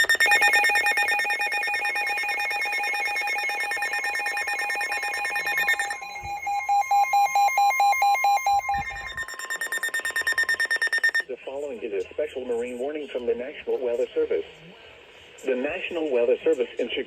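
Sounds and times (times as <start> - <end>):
steady alarm tone: 0.0 - 11.3
weather radios warbling beeps: 0.0 - 11.3.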